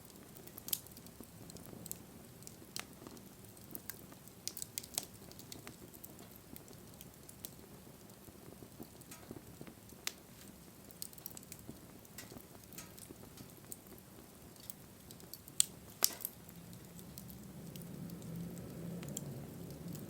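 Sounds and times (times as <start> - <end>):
bonfire crackling and popping: 0.0 - 20.0
low rush of flame: 0.0 - 20.0.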